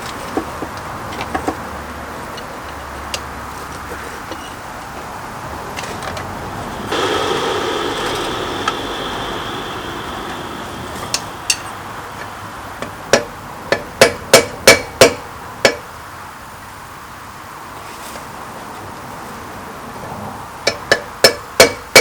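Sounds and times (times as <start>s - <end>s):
steady rushing noise: 5.0s - 14.6s
hammer ringing on anvil: 6.9s - 12.2s.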